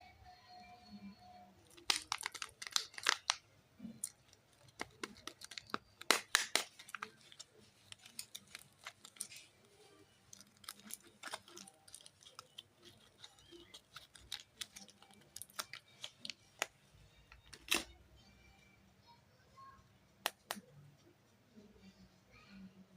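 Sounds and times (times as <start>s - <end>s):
packaging crinkling and clicking: 1.7s - 3.4s, 4.0s - 9.5s, 10.3s - 17.9s.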